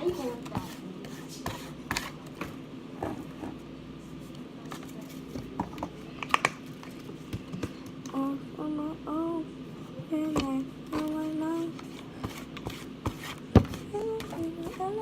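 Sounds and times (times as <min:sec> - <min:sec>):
child singing: 0:08.1 - 0:11.8, 0:13.8 - 0:15.0.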